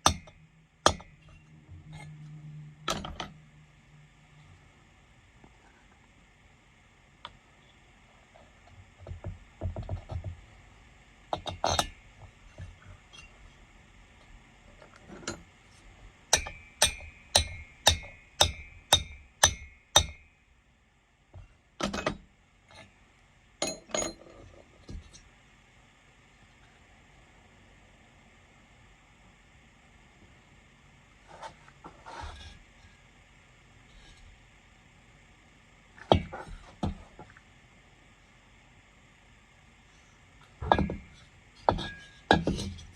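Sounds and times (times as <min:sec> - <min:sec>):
sharp ringing metal taps: 0:16.3 - 0:20.3.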